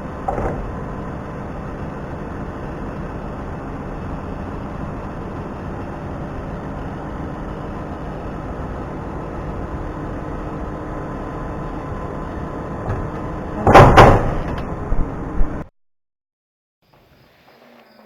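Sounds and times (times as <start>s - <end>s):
machine hum: 0.0s - 15.7s
loud clattering knocks: 0.1s - 1.4s, 12.8s - 14.8s.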